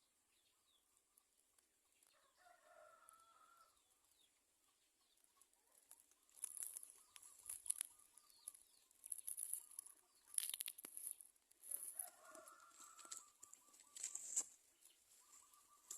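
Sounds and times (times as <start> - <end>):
finch chicks chirping: 3.8 - 11.3, 12.9 - 15.9
high-pitched rustling: 9.0 - 14.6.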